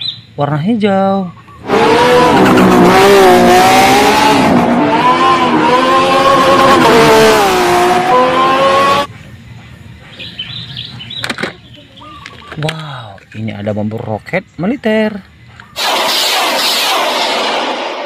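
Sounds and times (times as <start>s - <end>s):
race car engine revving: 1.6s - 9.1s.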